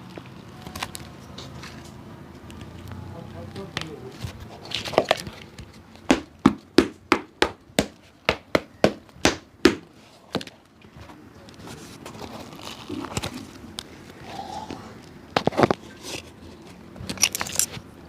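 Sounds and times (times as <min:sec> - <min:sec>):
hammer tapping on shoe: 0:06.1 - 0:10.5.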